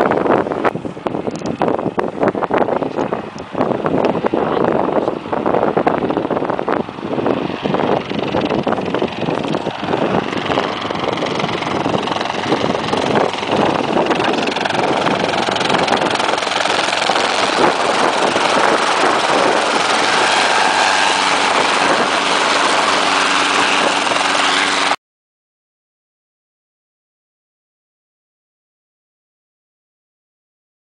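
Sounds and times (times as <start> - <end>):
helicopter engine and rotor: 0.0 - 25.0
wind gusts on microphone: 0.0 - 25.0.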